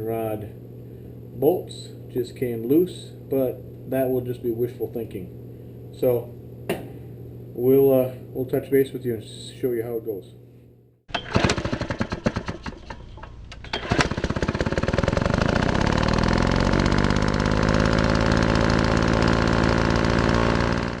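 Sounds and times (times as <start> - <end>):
small engine starting and running: 11.1 - 21.0.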